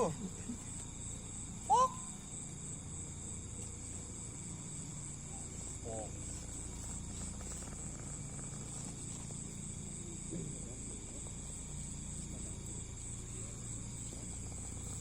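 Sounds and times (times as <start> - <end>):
insect chirring: 0.0 - 15.0.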